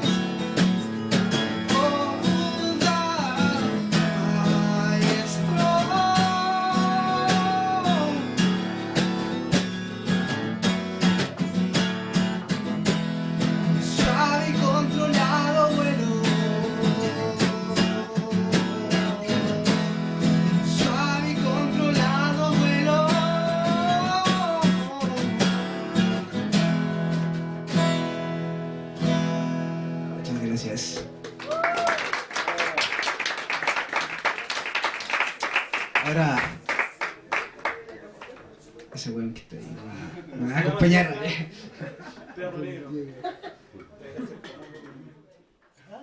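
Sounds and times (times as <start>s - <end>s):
acoustic guitar strumming: 0.0s - 31.3s
person singing: 1.7s - 8.4s, 13.8s - 25.9s.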